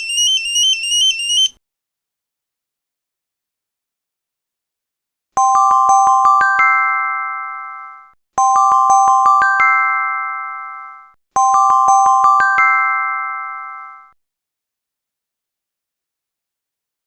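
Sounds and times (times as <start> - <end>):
phone alarm chiming notes: 0.0 - 1.6.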